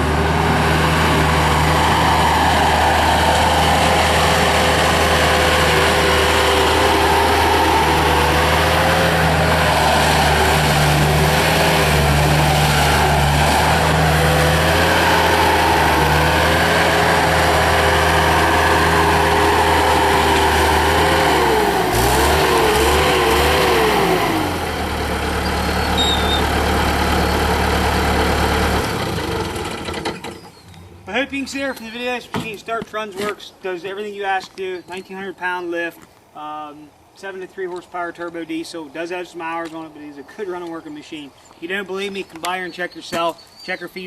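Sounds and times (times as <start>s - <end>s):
diesel engine at high throttle: 0.0s - 31.1s.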